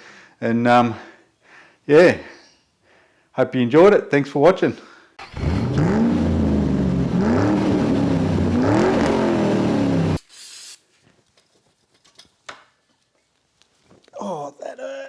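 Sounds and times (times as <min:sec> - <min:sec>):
engine revving: 0:05.2 - 0:10.2
short hiss: 0:10.2 - 0:10.9.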